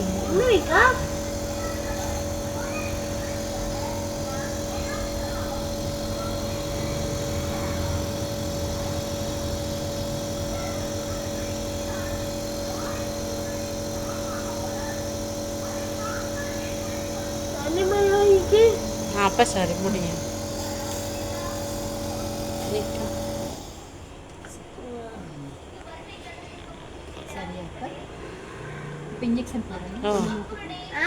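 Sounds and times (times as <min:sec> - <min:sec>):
air compressor humming: 0:00.0 - 0:24.3.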